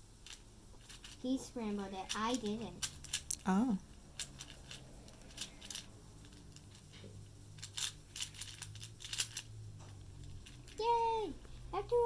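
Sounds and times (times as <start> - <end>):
puzzle cube plastic clicking: 2.1 - 3.5, 7.6 - 9.5.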